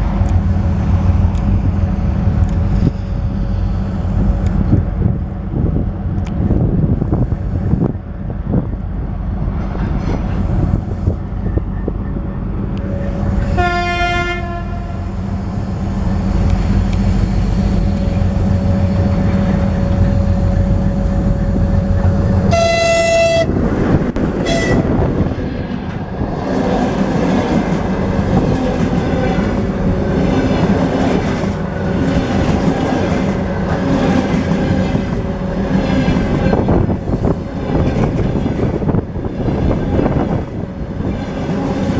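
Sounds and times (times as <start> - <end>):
diesel locomotive engine drone: 0.0 - 41.9
locomotive horn blasts: 13.5 - 15.1, 22.5 - 23.6, 24.4 - 25.0.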